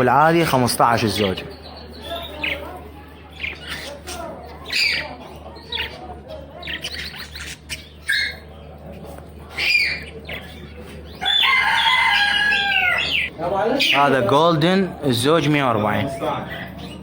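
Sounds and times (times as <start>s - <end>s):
small birds chirping: 0.0s - 17.0s
rooster crowing: 11.2s - 13.2s.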